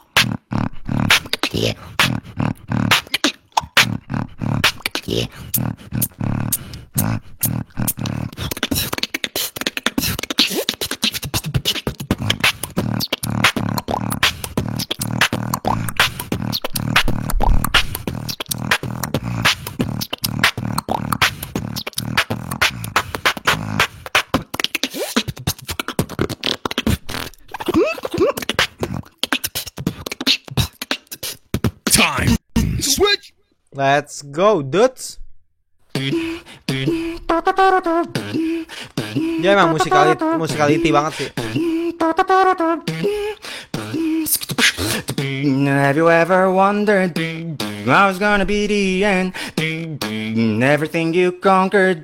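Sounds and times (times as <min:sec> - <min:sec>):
beatboxing: 0:00.0 - 0:33.3, 0:35.9 - 0:52.0
low vocal bass tone: 0:03.8 - 0:08.4, 0:12.2 - 0:21.8, 0:35.1 - 0:42.0, 0:44.9 - 0:52.0
gliding vocal effects: 0:35.9 - 0:42.0, 0:47.1 - 0:50.6.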